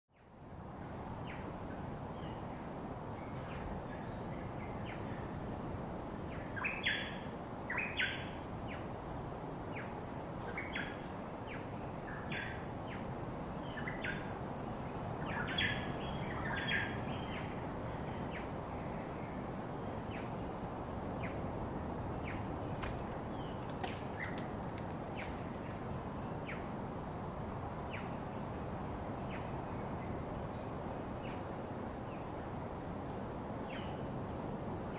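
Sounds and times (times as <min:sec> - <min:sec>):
birds chirping: 0:22.2 - 0:25.8.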